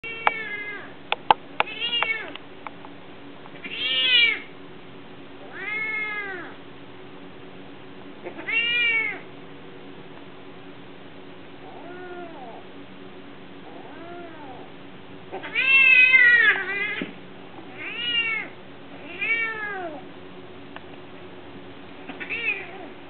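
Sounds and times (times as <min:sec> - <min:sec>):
steady low hum: 0:00.0 - 0:23.0
cat meowing in distress: 0:05.5 - 0:06.6, 0:08.2 - 0:09.2, 0:11.7 - 0:12.6, 0:13.7 - 0:14.7, 0:15.3 - 0:17.1, 0:17.7 - 0:20.0.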